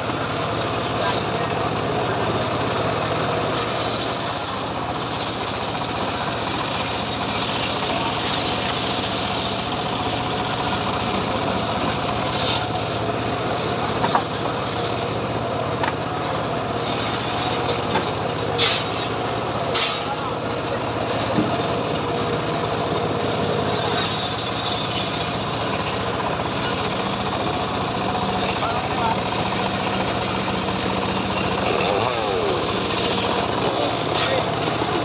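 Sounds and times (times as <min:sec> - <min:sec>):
engine droning: 0:00.0 - 0:35.0
saw rasping through wood: 0:03.4 - 0:14.3, 0:23.4 - 0:35.0.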